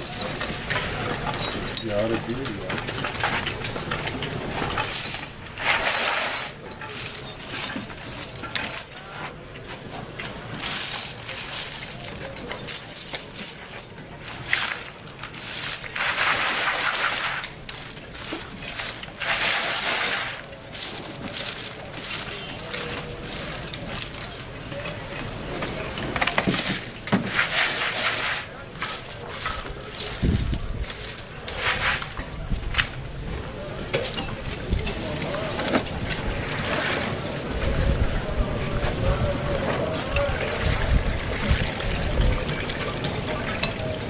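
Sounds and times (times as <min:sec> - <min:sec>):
hard pieces scraping and clinking: 0:00.0 - 0:33.0.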